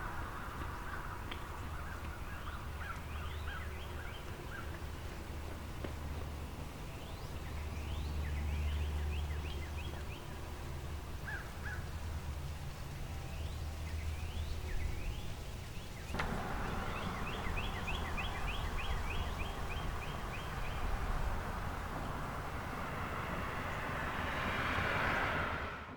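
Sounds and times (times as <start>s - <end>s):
songbird singing: 0.0s - 25.7s
steady hiss: 11.1s - 25.1s
low steady rumble: 16.0s - 25.9s.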